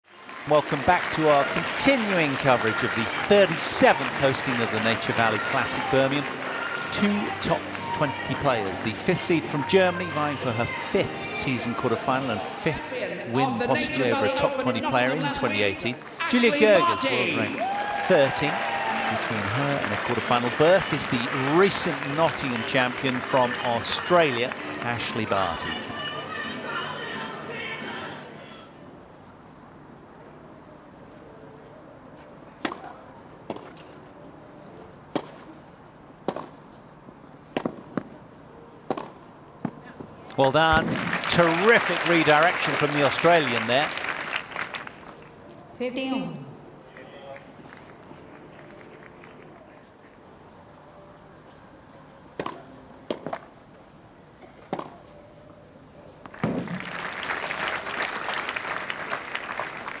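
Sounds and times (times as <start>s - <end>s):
crowd applauding: 0.0s - 11.2s, 16.0s - 25.8s, 40.3s - 45.4s, 46.9s - 49.7s, 56.3s - 60.0s
tennis ball hit by rackets: 32.6s - 32.9s, 35.1s - 35.5s, 36.2s - 36.6s, 37.5s - 38.1s, 38.9s - 39.2s, 52.4s - 53.5s, 54.7s - 55.0s, 56.4s - 56.8s.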